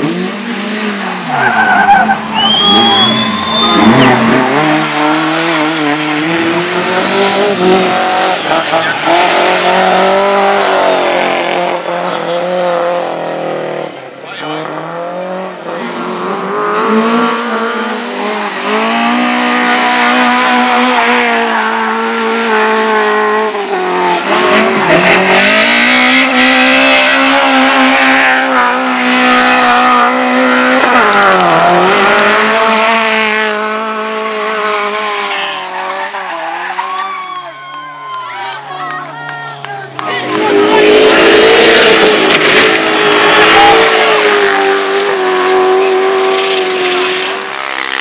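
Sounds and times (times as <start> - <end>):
motorcycles racing at high revs: 0.0 - 36.8, 39.7 - 48.0.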